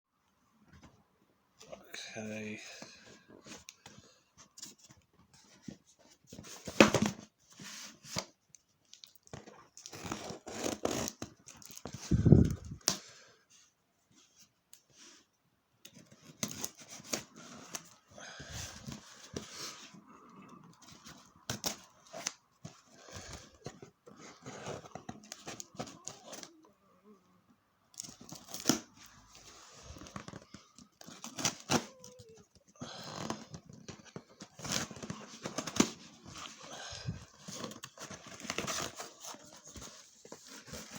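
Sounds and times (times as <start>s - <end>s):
cardboard packaging tearing: 9.8s - 12.8s, 29.6s - 40.9s.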